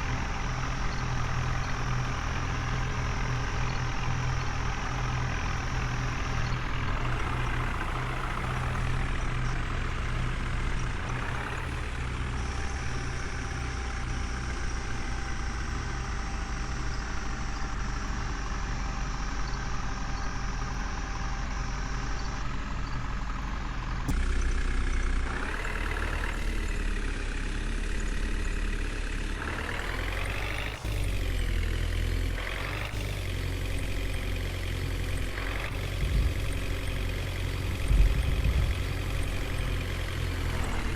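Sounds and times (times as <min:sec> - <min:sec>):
diesel engines running: 0:00.0 - 0:40.9
engine revving: 0:00.0 - 0:40.9.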